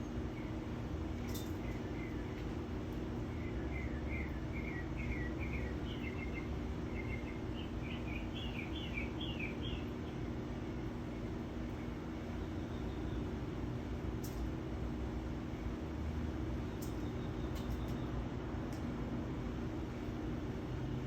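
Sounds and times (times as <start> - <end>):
low background hum: 0.0 - 21.0
small bird singing: 0.2 - 0.6, 1.3 - 10.4, 11.8 - 13.4.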